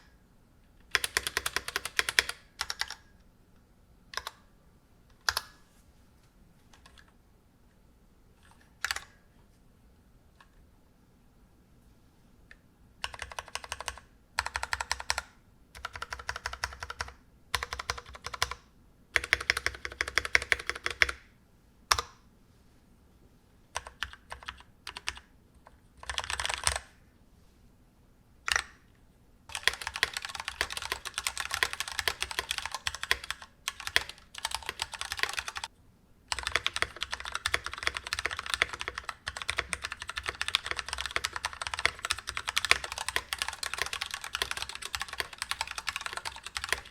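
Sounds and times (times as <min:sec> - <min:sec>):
mechanical keyboard typing: 0:00.8 - 0:03.1, 0:04.1 - 0:04.4, 0:05.2 - 0:05.6, 0:08.4 - 0:09.2, 0:13.0 - 0:21.2, 0:21.9 - 0:22.2, 0:23.8 - 0:26.9, 0:28.5 - 0:28.8, 0:29.5 - 0:35.7, 0:36.3 - 0:46.9.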